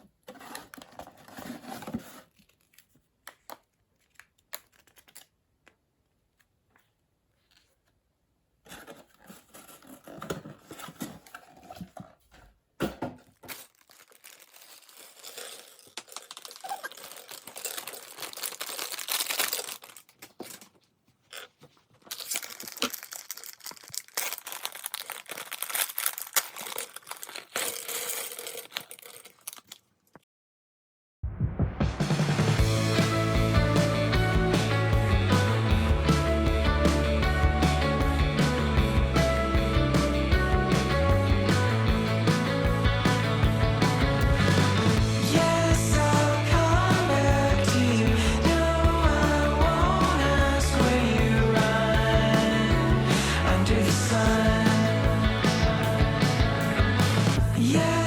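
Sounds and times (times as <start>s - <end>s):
plastic bags crinkling: 0.2s - 5.4s, 13.2s - 30.2s.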